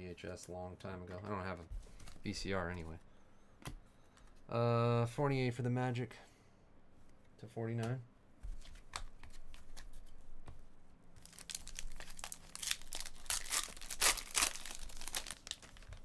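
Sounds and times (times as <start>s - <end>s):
wrapper tearing and crinkling: 11.2s - 16.0s.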